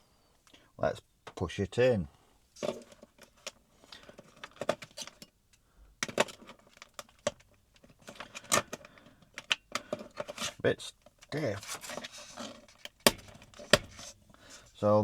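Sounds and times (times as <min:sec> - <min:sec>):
plastic case handling: 0:02.6 - 0:05.3, 0:06.0 - 0:14.7.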